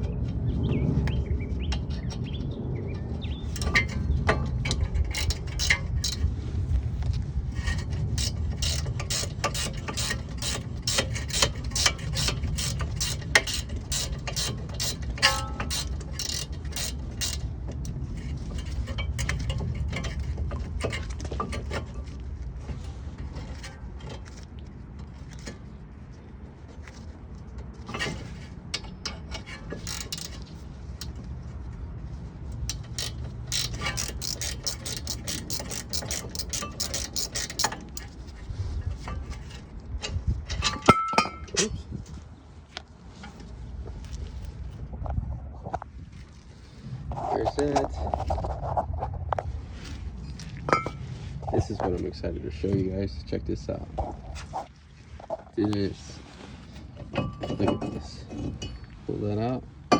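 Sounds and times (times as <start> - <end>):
socket ratchet clicking: 8.2 - 17.5, 29.8 - 30.4, 32.7 - 38.1.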